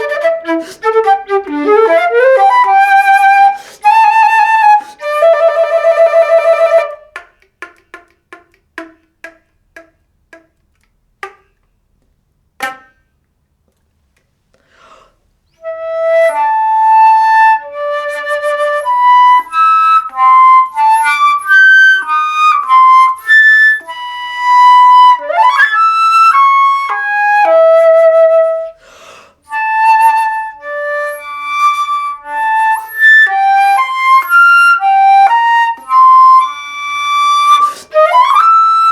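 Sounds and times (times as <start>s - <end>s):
solo flute playing: 0.0s - 7.2s, 15.5s - 28.8s, 29.5s - 38.9s.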